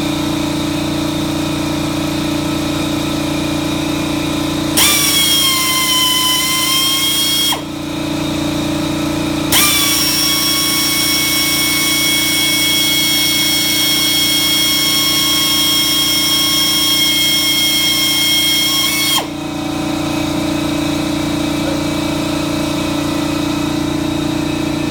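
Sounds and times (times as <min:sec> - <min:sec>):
drill whining: 0:00.1 - 0:24.9
steady low hum: 0:14.1 - 0:24.9.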